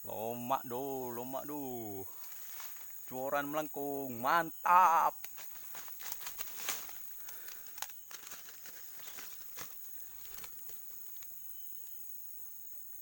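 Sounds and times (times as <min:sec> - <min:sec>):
insects droning: 0:00.0 - 0:13.0
rustling and clicks: 0:05.2 - 0:11.4.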